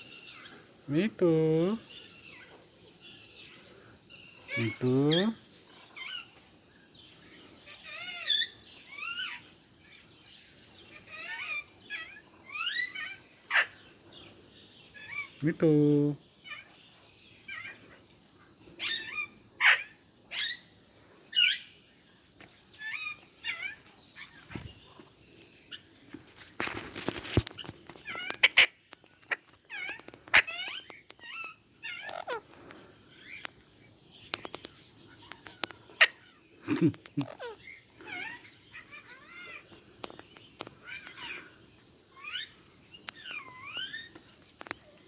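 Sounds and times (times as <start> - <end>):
high insect drone: 0.0 - 45.0
parrots squawking and chirping: 11.1 - 13.7, 28.0 - 32.6, 35.2 - 36.3, 37.2 - 39.6.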